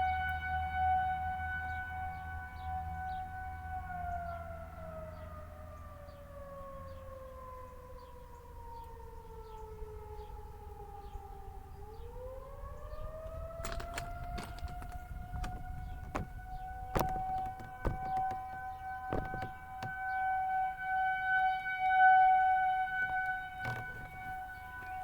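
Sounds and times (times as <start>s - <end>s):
wailing warning siren: 0.0s - 25.0s.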